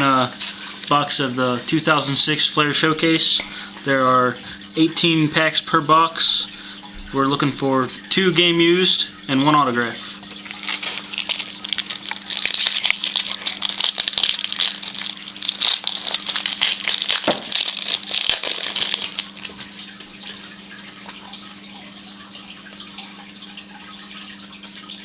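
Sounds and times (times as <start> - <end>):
wrappers crinkling and tearing: 10.3 - 19.8.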